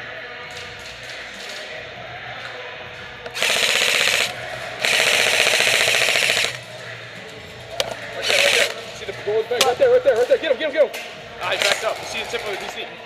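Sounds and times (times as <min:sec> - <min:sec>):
airsoft rifle full-auto bursts: 0:03.4 - 0:06.6, 0:08.2 - 0:08.8.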